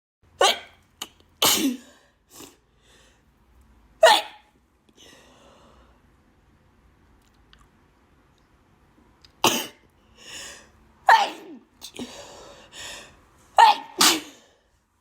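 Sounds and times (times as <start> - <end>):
woman sneezing: 1.4 - 2.6, 4.0 - 4.4, 11.1 - 12.2, 13.6 - 14.5.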